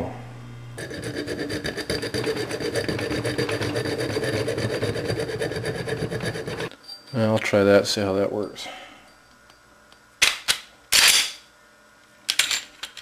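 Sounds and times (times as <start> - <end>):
hand file rasping on steel: 0.8 - 6.7.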